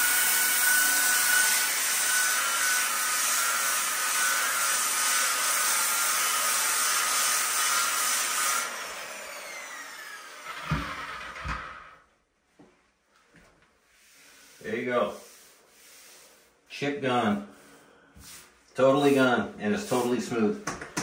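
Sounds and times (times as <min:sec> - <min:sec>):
power sander whining: 0:07.8 - 0:11.9.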